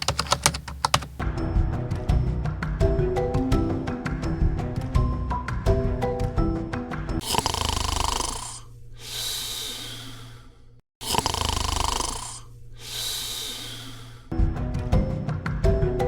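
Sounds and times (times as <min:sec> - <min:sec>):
person snoring: 0:07.2 - 0:14.3.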